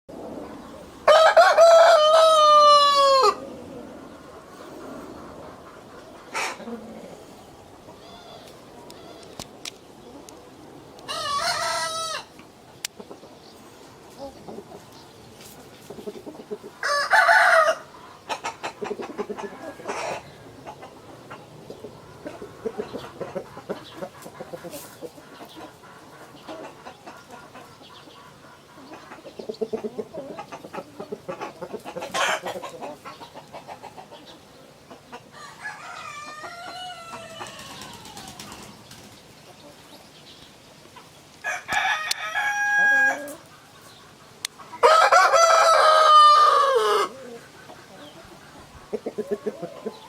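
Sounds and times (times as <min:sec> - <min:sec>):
chickens clucking: 0:00.1 - 0:50.0
roosters crowing: 0:00.6 - 0:05.2, 0:11.0 - 0:12.4, 0:16.7 - 0:21.1, 0:32.0 - 0:33.0, 0:35.3 - 0:38.7, 0:41.4 - 0:43.5, 0:44.7 - 0:47.6.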